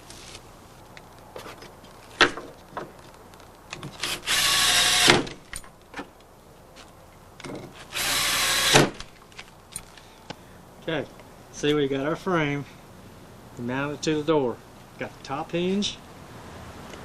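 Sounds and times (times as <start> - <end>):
power drill driving screws: 4.0 - 5.4, 7.8 - 9.1.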